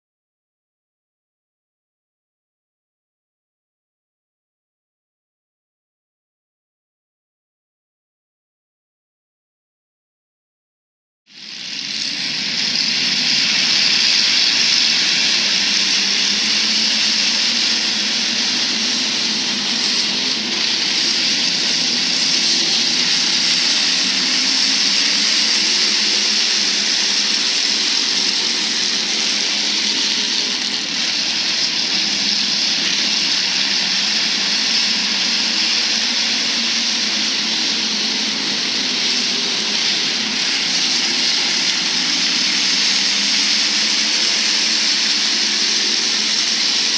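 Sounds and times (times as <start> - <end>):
race car engines roaring: 11.7 - 46.9.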